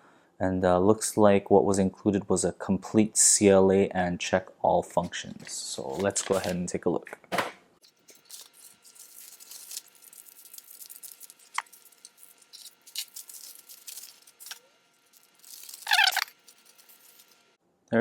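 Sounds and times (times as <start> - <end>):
packaging rustling and crinkling: 5.4 - 6.6, 7.8 - 17.6
packaging ripping: 5.9 - 6.6, 7.8 - 17.5.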